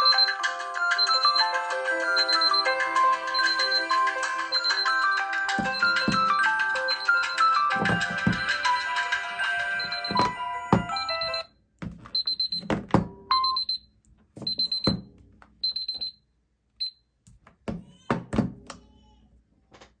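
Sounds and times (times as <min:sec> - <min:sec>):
melodic alarm tune: 0:00.0 - 0:11.5, 0:12.2 - 0:13.8, 0:14.5 - 0:16.1
high-pitched timer beeps: 0:03.3 - 0:07.6, 0:13.3 - 0:13.8
knocks and thumps: 0:05.5 - 0:06.4, 0:07.7 - 0:08.7, 0:10.0 - 0:11.2, 0:11.8 - 0:13.3, 0:14.4 - 0:15.2, 0:17.4 - 0:18.7.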